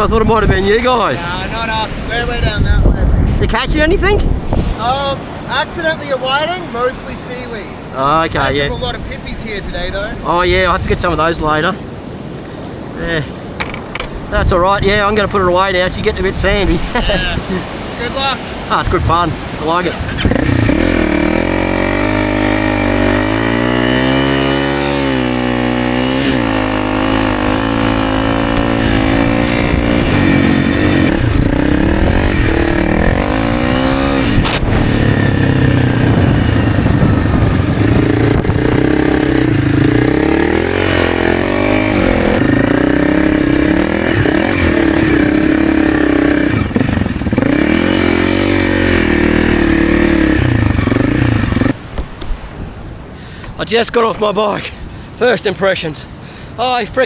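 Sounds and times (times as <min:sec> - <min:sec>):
motorbike engine revving: 0:20.0 - 0:51.9.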